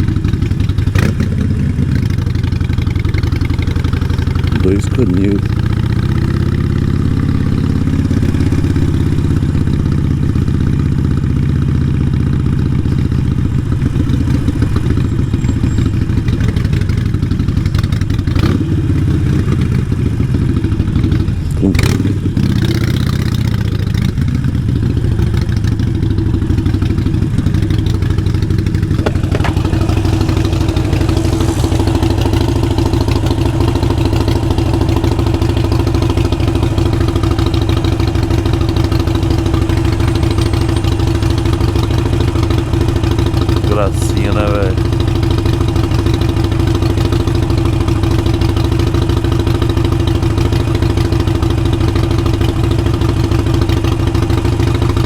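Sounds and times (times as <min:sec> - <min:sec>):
motorcycle engine running: 0:00.0 - 0:55.0
short knocks: 0:29.0 - 0:29.8.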